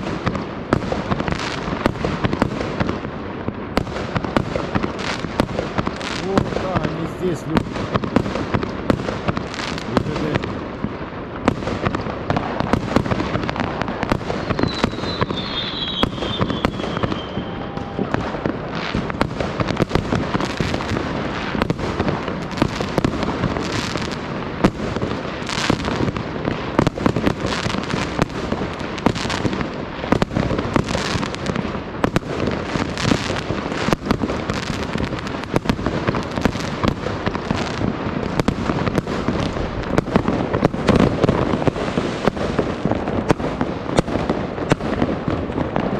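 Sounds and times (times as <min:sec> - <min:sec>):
fireworks bangs and crackle: 0:00.0 - 0:45.9
falling firework whistle: 0:14.2 - 0:19.1.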